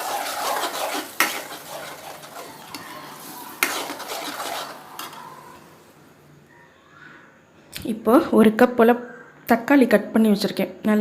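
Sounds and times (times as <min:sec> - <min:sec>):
paste sizzling in hot oil: 0:00.0 - 0:05.9
spatula stirring and scraping: 0:00.0 - 0:06.0
spatula clanking against pan: 0:03.6 - 0:05.3.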